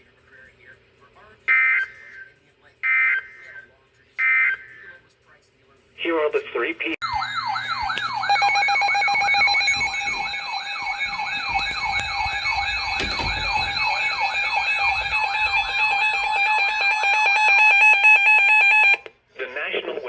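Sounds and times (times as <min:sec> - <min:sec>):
fast pulsing beep: 0:07.0 - 0:18.8
wavering high tone: 0:07.0 - 0:19.0
alert siren sweeping up: 0:07.0 - 0:19.1.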